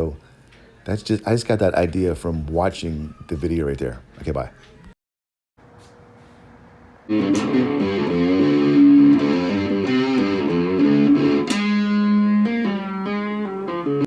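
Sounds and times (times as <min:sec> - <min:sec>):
electric guitar through amplifier: 0:07.1 - 0:14.0.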